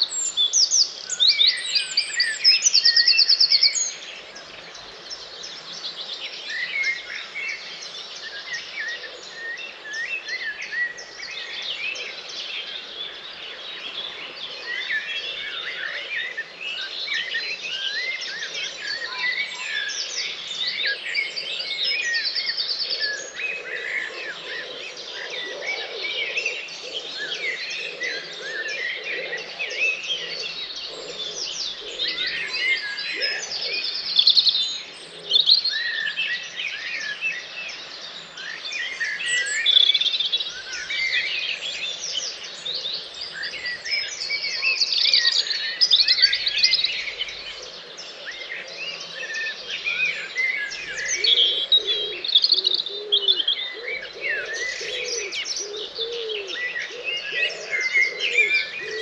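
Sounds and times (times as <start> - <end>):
lower bird calls: 0.0 - 59.0
songbirds singing: 0.0 - 59.0.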